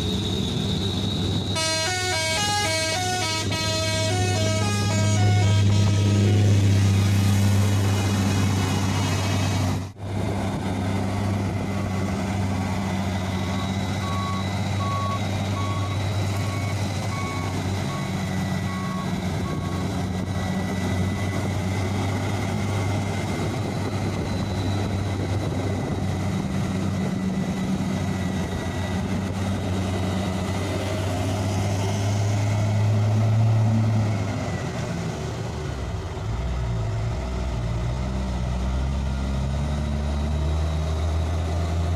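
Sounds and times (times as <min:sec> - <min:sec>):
reversing beeper: 0:00.0 - 0:07.0, 0:11.6 - 0:21.7
truck diesel engine running: 0:00.0 - 0:41.9.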